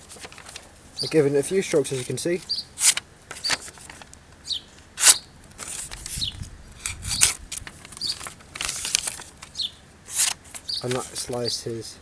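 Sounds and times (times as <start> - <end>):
knife blade scraping: 5.0 - 5.2
wind rumble on microphone: 5.9 - 8.1.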